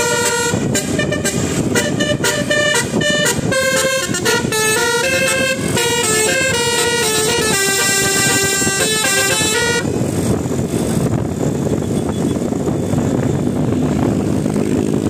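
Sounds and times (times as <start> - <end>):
bus melody horn: 0.0 - 10.1
rushing vehicle noise: 0.0 - 15.0.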